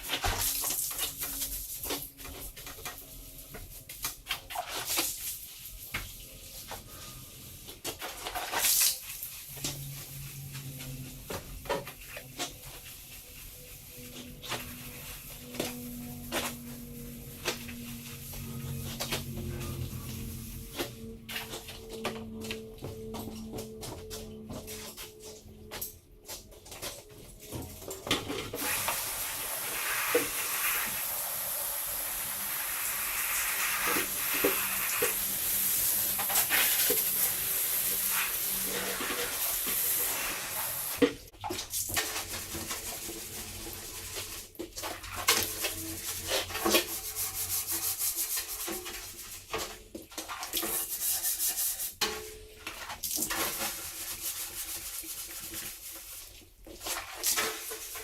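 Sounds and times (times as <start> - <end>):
surfaces being scrubbed: 4.6 - 22.0, 28.5 - 41.1, 42.0 - 58.0.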